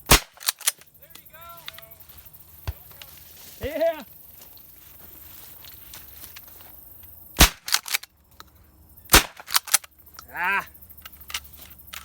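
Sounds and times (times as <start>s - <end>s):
shotgun shots: 0.0s - 0.7s, 7.4s - 8.0s, 9.1s - 9.8s.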